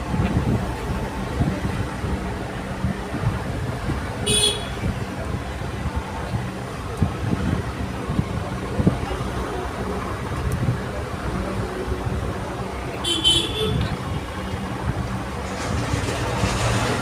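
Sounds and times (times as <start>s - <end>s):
road traffic rumble: 0.0s - 17.0s
vehicle horn toot: 4.3s - 4.8s, 13.0s - 13.9s.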